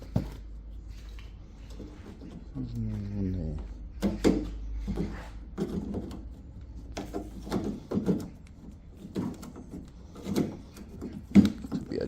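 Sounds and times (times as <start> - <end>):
clunks and scrapes on sheet steel: 4.0 - 12.0.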